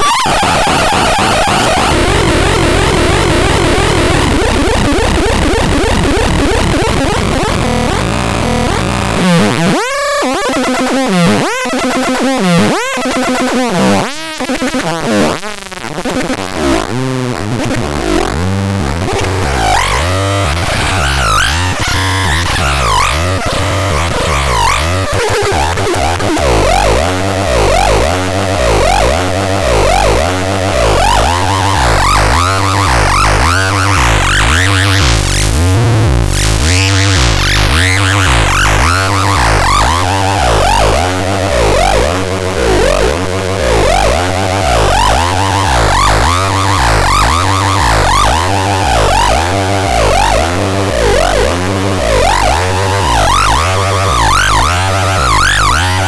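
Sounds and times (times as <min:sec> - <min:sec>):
fast-wobbling synth tones: 0:00.0 - 0:09.8, 0:18.0 - 0:56.0
synthesizer bass pattern: 0:00.5 - 0:09.7, 0:18.0 - 0:56.0.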